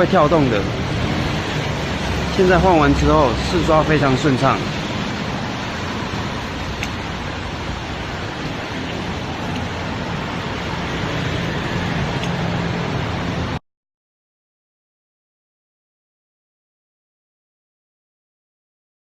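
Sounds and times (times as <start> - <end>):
windscreen wipers sweeping wet glass: 0.0 - 13.6.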